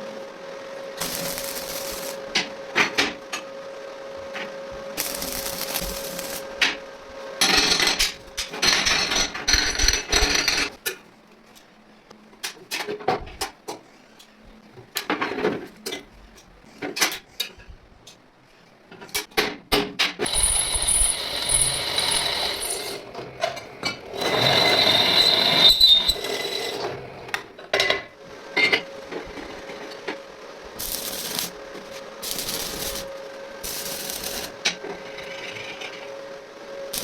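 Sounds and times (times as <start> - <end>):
mechanism whirring: 0.9 - 2.7, 4.8 - 10.4, 20.2 - 27.6, 30.0 - 37.0.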